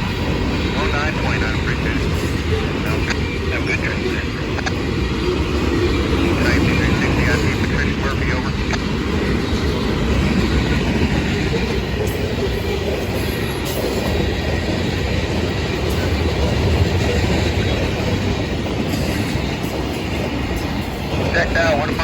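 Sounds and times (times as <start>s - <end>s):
freight train wheels rumbling: 0.0s - 22.0s.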